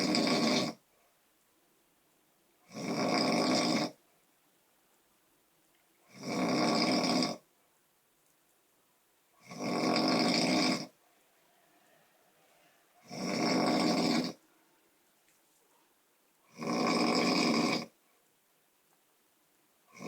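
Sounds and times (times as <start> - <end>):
loud snores: 0.0 - 0.8, 2.6 - 4.0, 6.1 - 7.4, 9.4 - 11.0, 12.4 - 14.5, 16.5 - 18.0
quiet breathing: 10.0 - 16.5.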